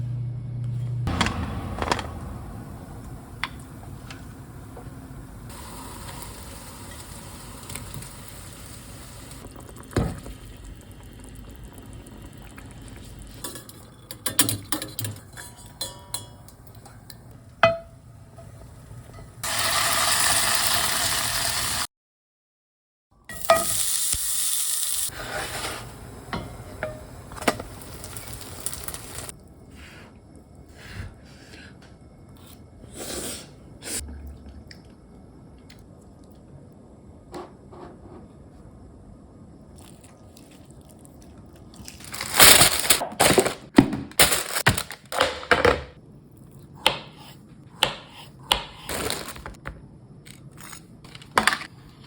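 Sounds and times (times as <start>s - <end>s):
food sizzling in a pan: 5.5s - 11.1s, 19.4s - 21.9s, 23.3s - 29.3s
utensils clinking and scraping: 13.4s - 17.1s.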